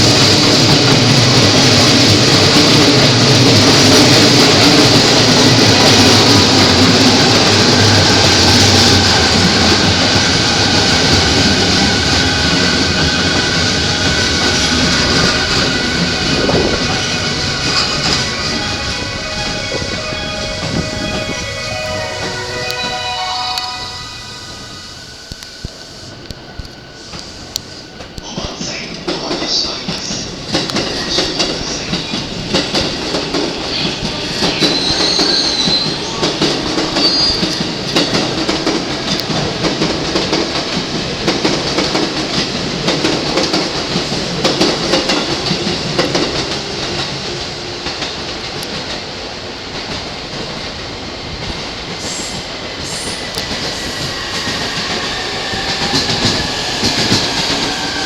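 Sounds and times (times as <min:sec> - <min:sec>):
electric train whine: 0:00.0 - 0:58.0
train wheels clacking on rail joints: 0:26.4 - 0:58.0
high wheel squeals: 0:52.0 - 0:58.0.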